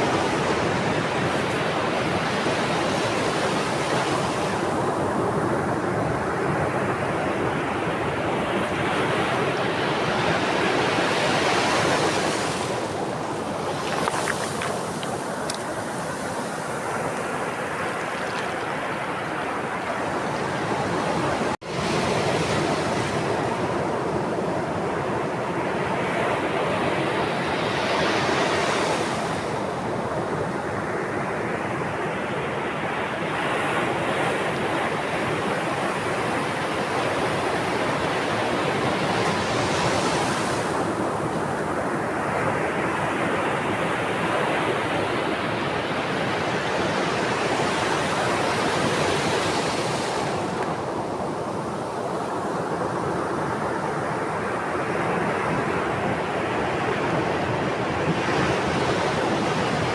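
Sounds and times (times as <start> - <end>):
sea waves washing onto shore: 0.0 - 30.0, 32.8 - 59.9.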